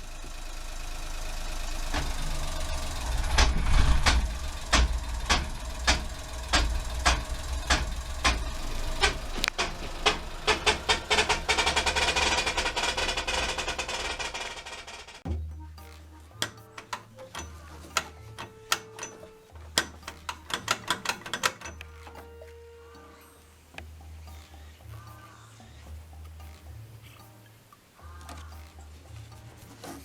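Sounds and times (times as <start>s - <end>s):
road noise: 0.0s - 15.3s
van engine droning: 0.0s - 22.8s
rhythmic click-knock: 1.2s - 22.6s.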